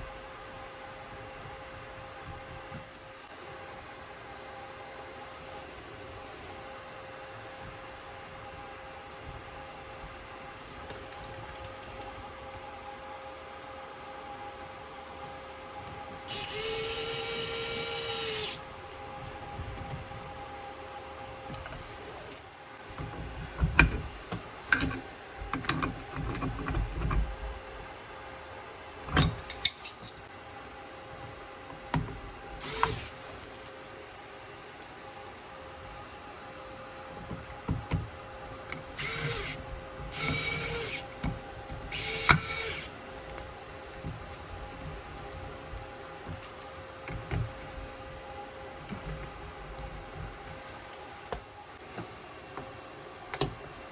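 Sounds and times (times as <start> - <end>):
cordless power drill running: 16.3 - 18.6, 32.6 - 33.2, 39.0 - 41.2, 41.9 - 43.0.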